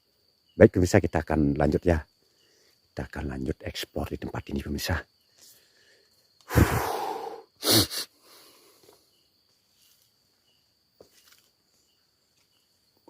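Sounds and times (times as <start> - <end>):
faint insect trill: 0.0 - 13.0
breath noises close to microphone: 5.4 - 9.0.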